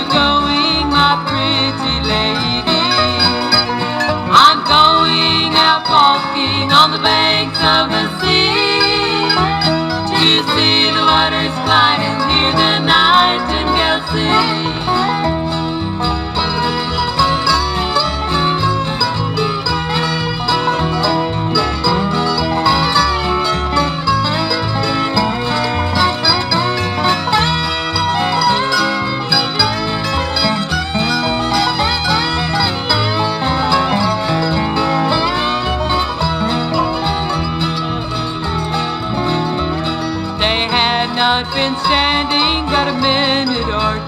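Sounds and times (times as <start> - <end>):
acoustic folk string band: 0.0 - 44.0
people singing: 4.3 - 15.2.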